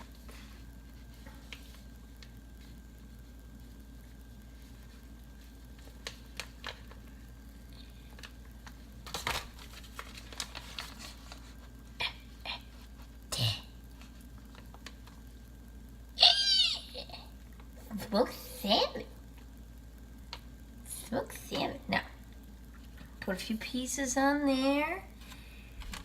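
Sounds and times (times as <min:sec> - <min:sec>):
plastic packet crinkling: 0:08.0 - 0:11.7.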